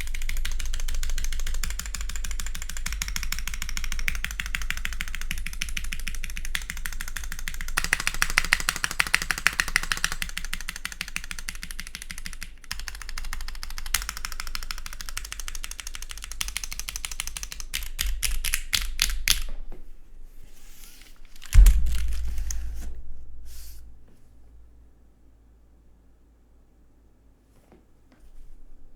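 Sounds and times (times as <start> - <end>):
mechanical keyboard typing: 0.0 - 19.4
loud low thump: 21.5 - 24.7.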